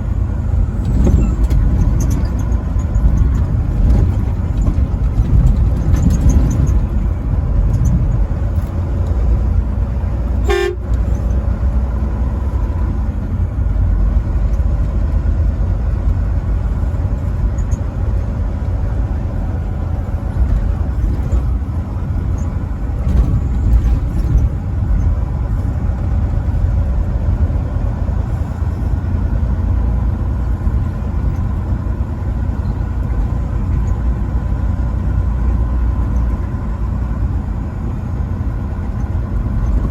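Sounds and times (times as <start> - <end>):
truck rumbling on road: 0.0 - 39.9
truck horn toot: 10.4 - 11.0.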